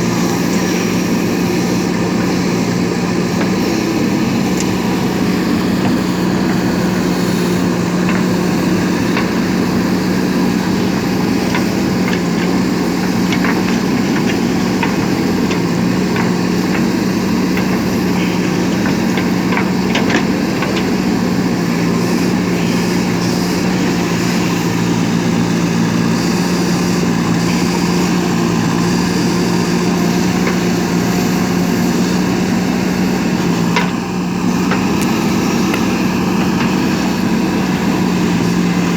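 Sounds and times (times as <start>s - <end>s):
diesel engine humming: 0.0s - 38.9s.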